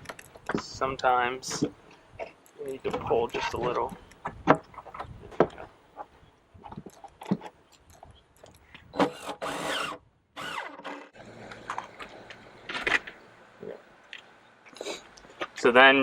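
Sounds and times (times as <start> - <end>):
wood scraping squeak: 2.9 - 8.2, 8.9 - 11.2.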